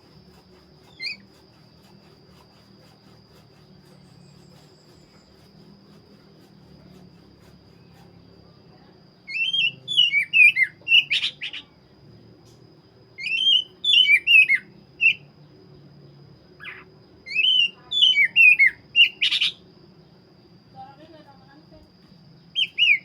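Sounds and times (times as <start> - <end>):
bird singing whistled phrases: 9.3 - 11.8, 13.2 - 15.3, 16.6 - 19.6, 22.5 - 23.0.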